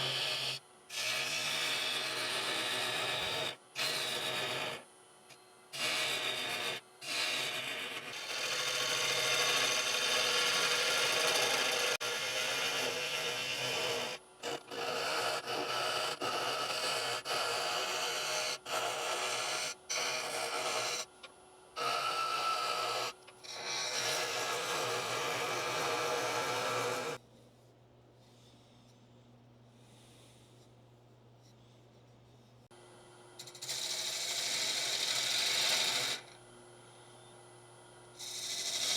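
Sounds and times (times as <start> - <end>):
gouge cutting on wood lathe: 0.0 - 4.8, 5.8 - 21.0, 21.8 - 27.2, 33.4 - 36.3, 38.2 - 38.9.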